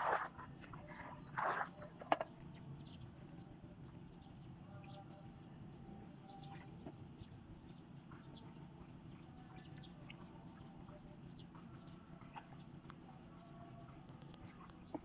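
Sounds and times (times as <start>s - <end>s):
small birds chirping: 2.4s - 15.0s.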